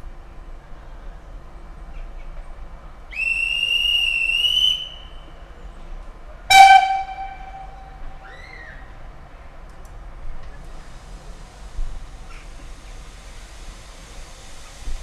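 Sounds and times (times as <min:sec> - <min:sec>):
steam locomotive whistle: 0:03.2 - 0:05.1, 0:06.5 - 0:08.5
low ringing tone: 0:06.5 - 0:08.2.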